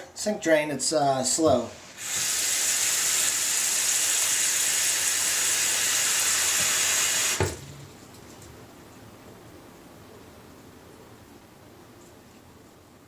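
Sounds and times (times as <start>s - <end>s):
faucet running into sink: 2.0s - 7.6s.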